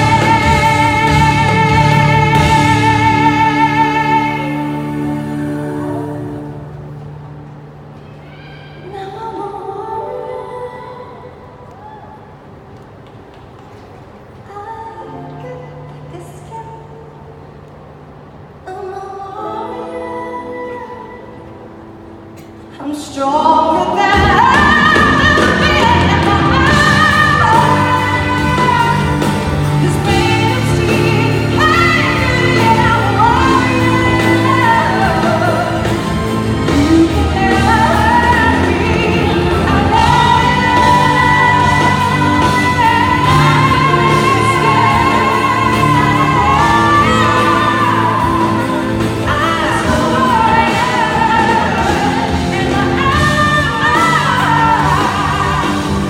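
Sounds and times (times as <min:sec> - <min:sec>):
band playing pop ballad: 0:00.0 - 0:07.2, 0:22.4 - 0:56.0.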